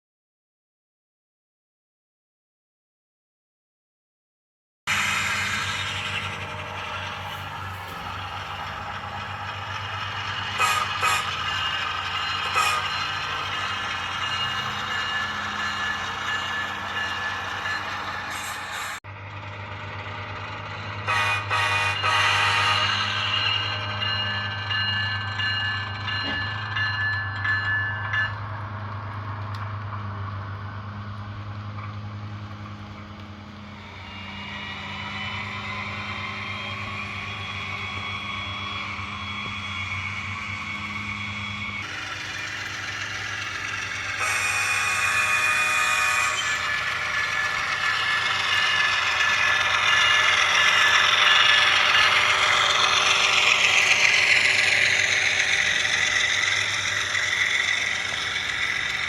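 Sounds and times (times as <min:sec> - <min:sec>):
model train diesel engine sound: 0:04.9 - 0:59.0.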